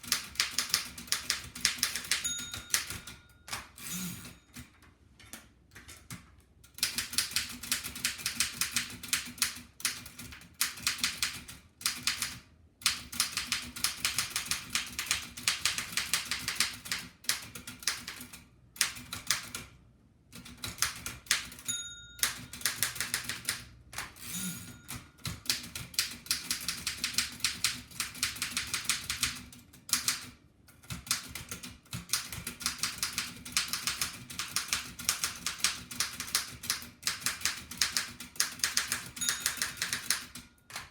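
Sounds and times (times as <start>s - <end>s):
typewriter keys striking: 0.0s - 3.9s, 5.8s - 19.6s, 20.4s - 40.9s
typewriter bell ringing: 1.7s - 4.7s, 21.4s - 23.4s, 24.2s - 25.3s, 38.9s - 40.9s.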